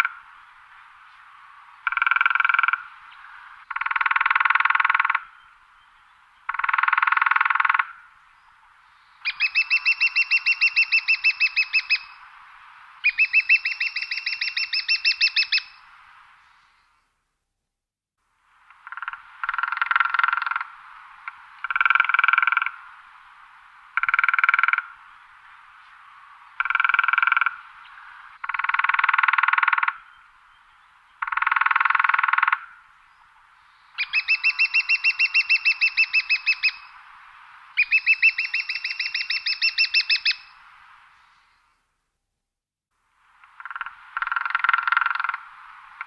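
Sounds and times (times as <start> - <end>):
woodpecker drumming on wood: 1.8 - 2.9, 3.7 - 5.3, 6.5 - 8.0, 18.7 - 22.8, 24.0 - 24.9, 26.6 - 27.6, 28.4 - 30.0, 31.2 - 32.7, 43.4 - 46.0.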